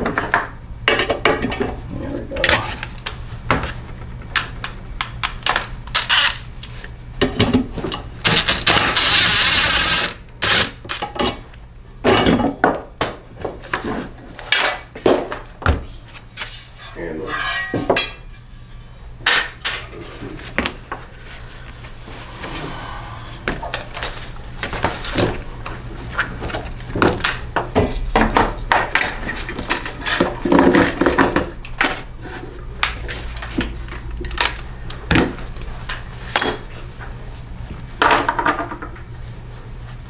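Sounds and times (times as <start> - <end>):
metal parts clinking and clattering: 27.6 - 32.1.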